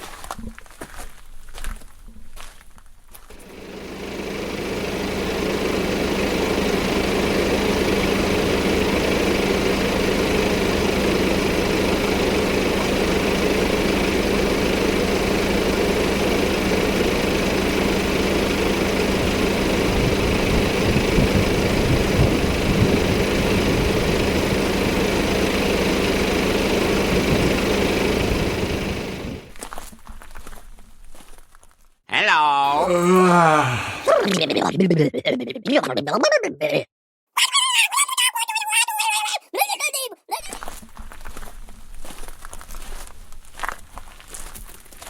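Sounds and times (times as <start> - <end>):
engine idling: 3.3 - 29.6, 32.7 - 34.4.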